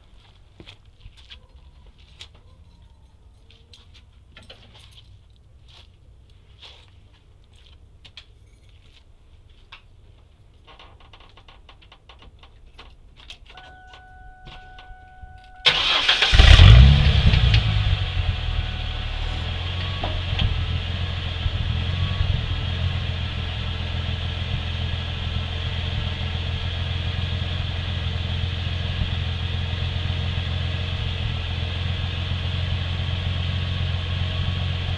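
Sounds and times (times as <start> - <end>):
faint steady tone: 13.5 - 15.8, 17.1 - 21.2
car engine starting and idling: 13.6 - 34.9.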